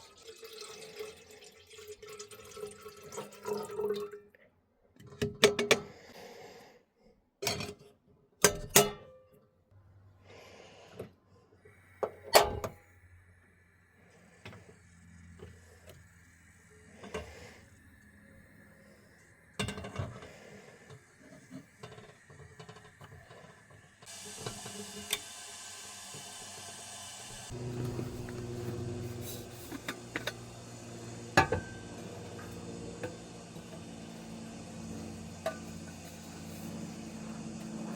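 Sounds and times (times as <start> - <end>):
camping cookware knocks and clinks: 7.4 - 7.8, 8.4 - 9.2, 19.6 - 20.3, 27.6 - 30.5, 31.4 - 34.0, 35.0 - 36.3
gas stove hissing: 11.7 - 37.9.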